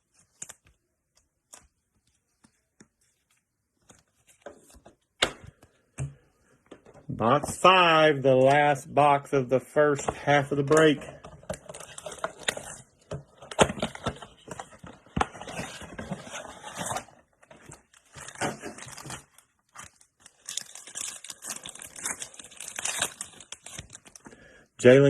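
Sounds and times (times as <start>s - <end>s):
foil packs tearing and crinkling: 18.0s - 24.2s.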